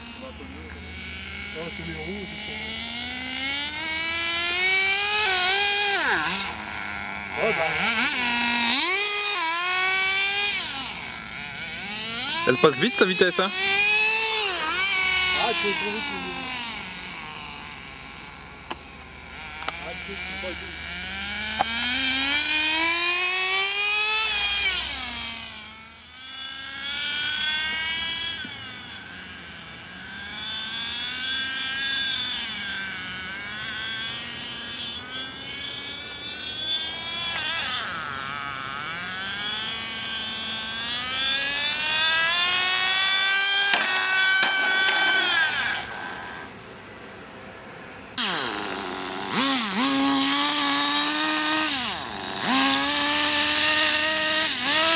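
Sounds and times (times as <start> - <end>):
rc car engine revving: 0.0 - 46.6, 48.1 - 54.9.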